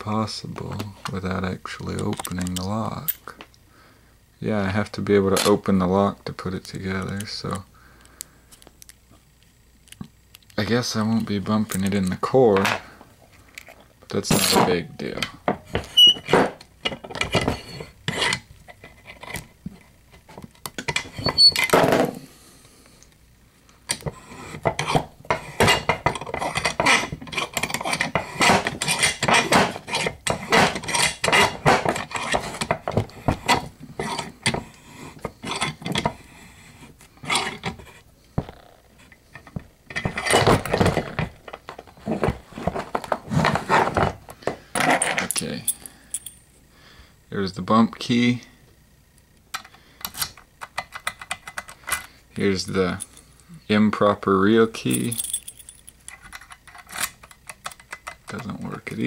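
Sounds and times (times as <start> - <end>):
padlock metal clicks and rattles: 49.6 - 52.1, 55.0 - 58.5.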